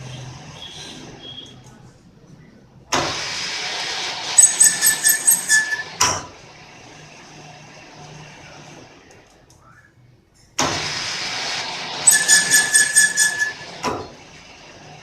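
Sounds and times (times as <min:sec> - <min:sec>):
lathe running and clattering: 0:02.9 - 0:09.0, 0:10.6 - 0:15.0.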